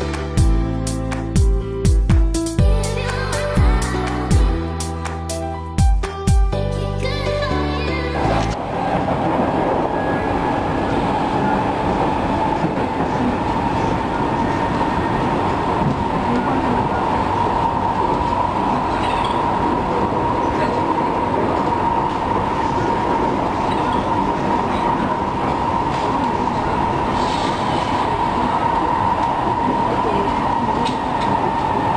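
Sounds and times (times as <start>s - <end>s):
train rumbling at speed: 8.1s - 31.9s
steady train whine: 8.2s - 31.9s.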